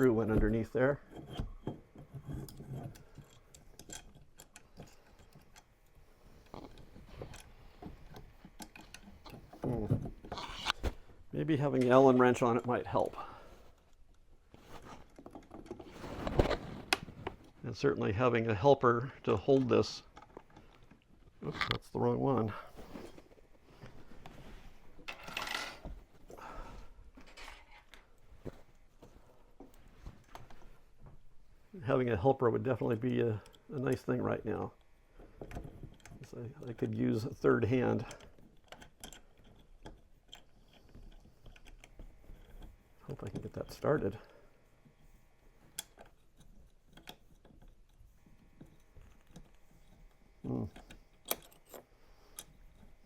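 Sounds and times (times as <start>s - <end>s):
tools scraping and rustling: 0.0s - 53.0s
small metal parts clicking: 2.3s - 7.5s, 35.8s - 44.2s, 48.6s - 53.0s.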